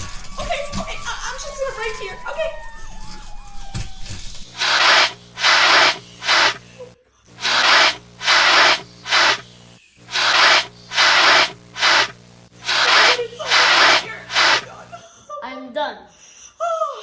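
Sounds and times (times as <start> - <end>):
firefighting spray hissing: 4.6 - 6.6, 7.4 - 14.8.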